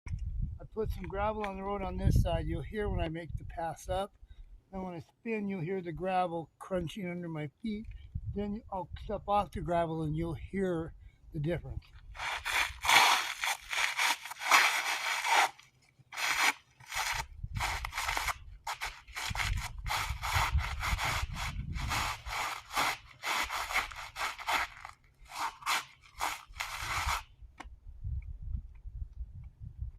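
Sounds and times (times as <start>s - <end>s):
footsteps crunching on gravel: 11.9s - 27.2s.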